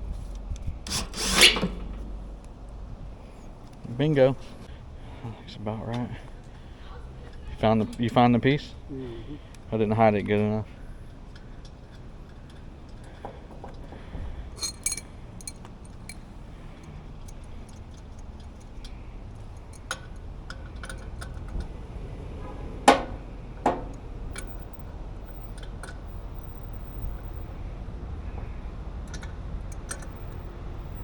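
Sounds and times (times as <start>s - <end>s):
low steady hum: 0.0s - 31.0s
tools and metal parts clinking: 14.5s - 21.7s, 29.0s - 31.0s.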